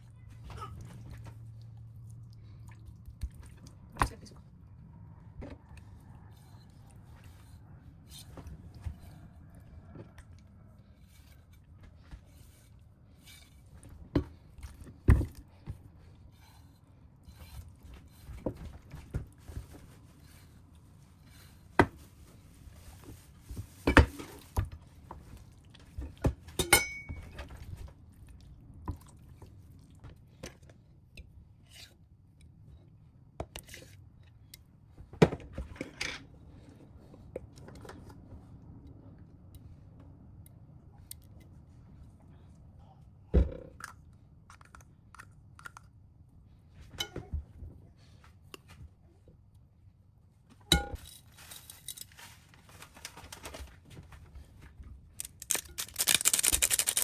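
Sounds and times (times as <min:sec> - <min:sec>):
low background hum: 0:00.0 - 0:57.0
kitchen utensils and dishes clinking: 0:26.6 - 0:27.4.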